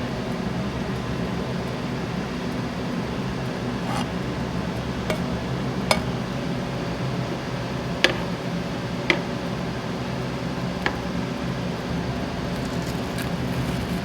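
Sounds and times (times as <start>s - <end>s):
kitchen hum: 3.1s - 14.0s.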